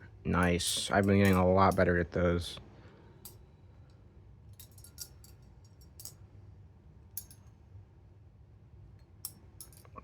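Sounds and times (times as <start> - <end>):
sharp metallic clicks of knife handles: 4.5 - 6.2, 7.2 - 7.5, 9.2 - 10.0.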